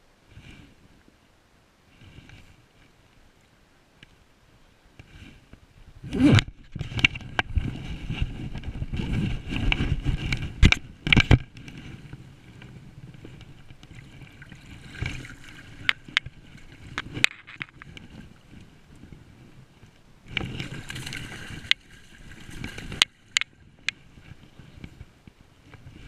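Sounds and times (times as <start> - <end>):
water sloshing and splashing: 12.6 - 18.6, 20.3 - 23.6.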